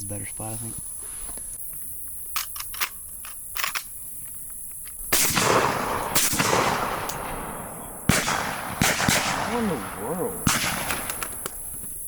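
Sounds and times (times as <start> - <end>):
distant shotgun pops: 4.8 - 12.0
shotgun blast: 5.1 - 11.5.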